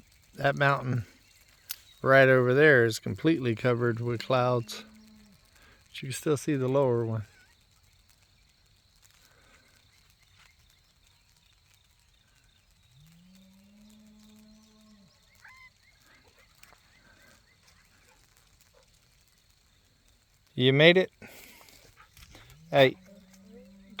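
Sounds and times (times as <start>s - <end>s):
faint bird chirps: 7.2s - 20.2s
cow mooing: 22.4s - 24.0s.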